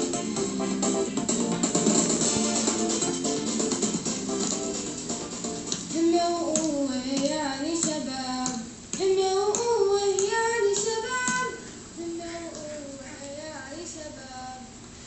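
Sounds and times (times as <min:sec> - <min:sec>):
child singing: 0:05.9 - 0:14.7
sharp taps: 0:06.5 - 0:11.6.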